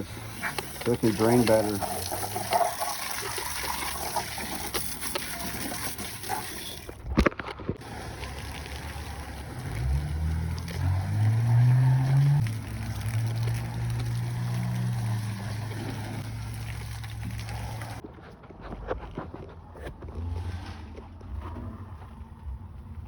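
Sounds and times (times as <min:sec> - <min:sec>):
water spraying from a hose: 0:00.0 - 0:07.0, 0:07.8 - 0:18.0
low motor hum: 0:07.8 - 0:18.0.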